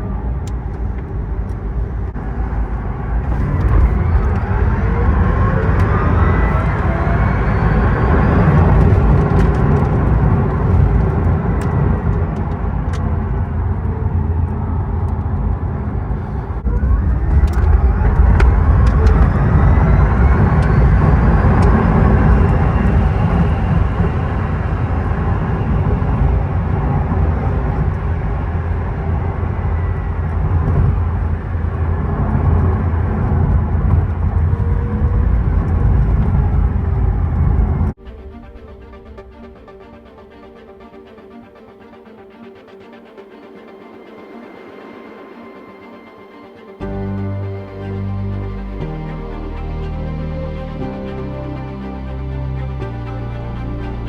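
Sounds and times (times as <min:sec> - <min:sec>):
electric motor whine rising: 0:00.0 - 0:14.8, 0:16.2 - 0:37.9
road and tyre rumble: 0:00.0 - 0:38.1.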